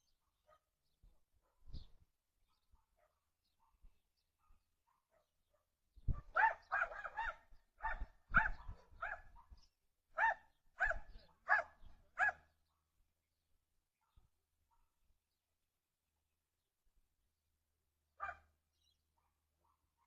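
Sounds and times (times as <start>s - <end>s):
dog barking: 0.2s - 0.8s, 1.4s - 12.9s, 14.0s - 15.0s, 18.2s - 18.5s, 19.1s - 20.0s.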